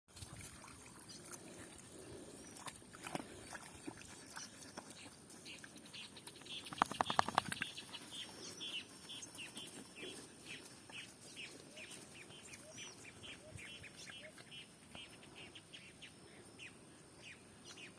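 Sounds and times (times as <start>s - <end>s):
bird chirping: 4.4s - 17.9s.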